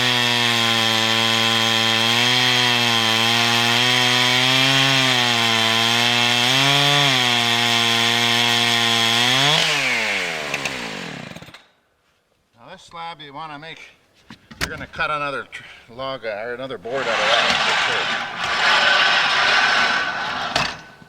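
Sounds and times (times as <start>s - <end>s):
chainsaw cutting through log: 0.0s - 11.6s, 16.8s - 21.0s.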